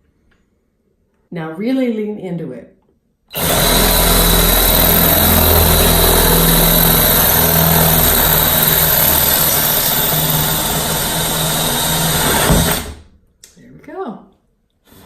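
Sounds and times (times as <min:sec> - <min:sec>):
power drill running under load: 0:03.3 - 0:13.0.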